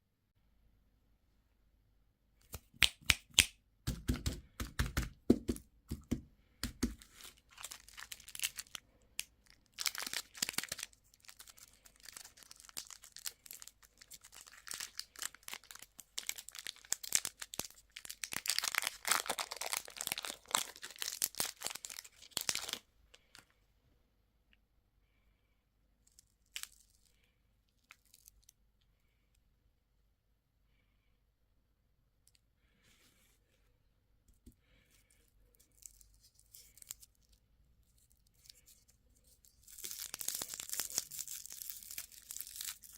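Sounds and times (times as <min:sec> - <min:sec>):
packaging tearing and crinkling: 0:07.0 - 0:08.8, 0:09.4 - 0:22.8, 0:39.4 - 0:42.9.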